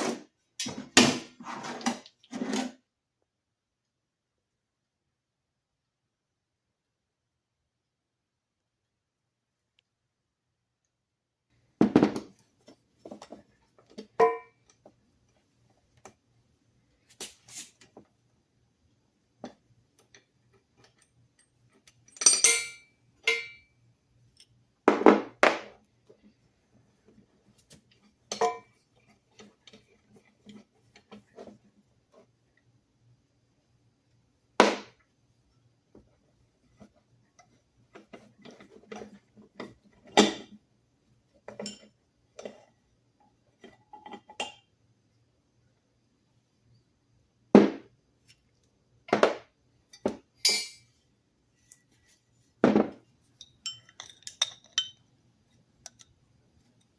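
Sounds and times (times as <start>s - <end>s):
knocks of objects set down: 11.8s - 12.4s, 52.6s - 53.0s
metallic clinks of objects handled: 20.8s - 23.7s, 53.4s - 55.0s.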